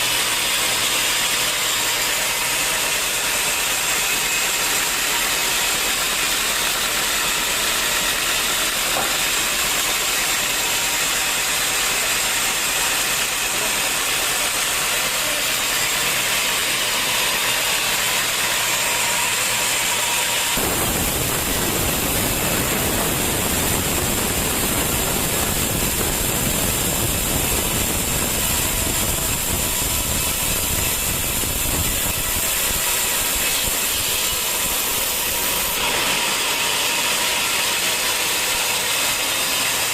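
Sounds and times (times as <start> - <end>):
sawmill machinery hissing: 0.0 - 39.9
heavy low rumble: 20.6 - 32.2.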